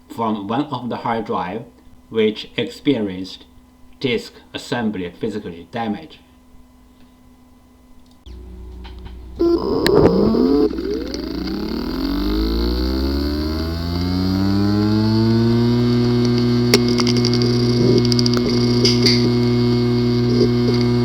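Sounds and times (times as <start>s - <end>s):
hard drive motor whine: 8.2s - 21.0s
hard drive clicks and ticks: 8.7s - 21.0s.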